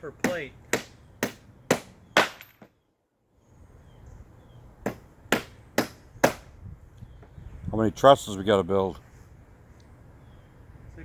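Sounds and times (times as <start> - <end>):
hammer driving nails: 0.2 - 2.7, 4.8 - 6.5.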